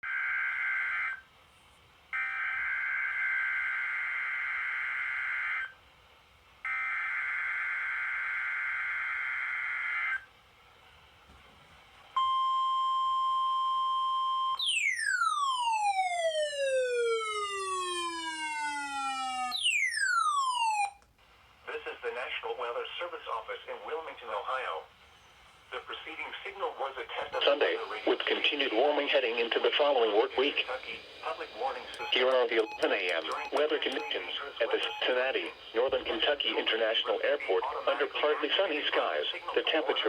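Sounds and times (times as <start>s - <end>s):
falling siren-like sweeps: 14.6s - 20.9s
digital data bursts: 30.5s - 38.5s.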